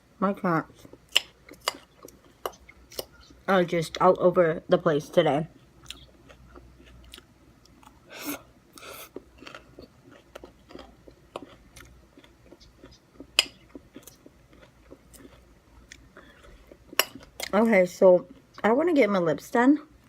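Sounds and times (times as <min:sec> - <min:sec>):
person chewing food: 0:00.7 - 0:03.5, 0:05.6 - 0:17.6.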